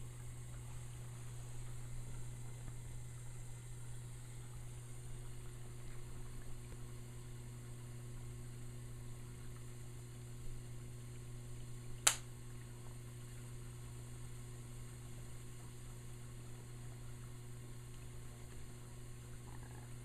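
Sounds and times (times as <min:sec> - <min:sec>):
dishwasher humming: 0:00.0 - 0:14.0
sharp click: 0:12.0 - 0:12.3.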